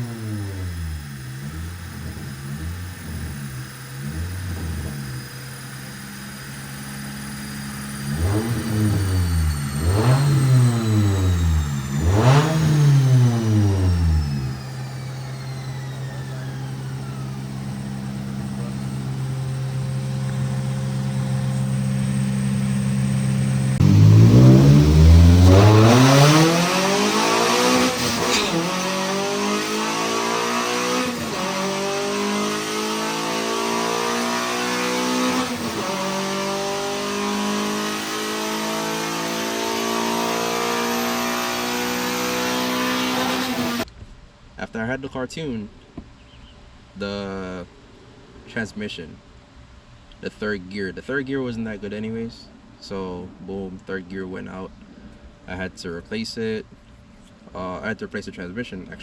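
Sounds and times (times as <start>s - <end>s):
car engine revving: 0.0s - 43.9s.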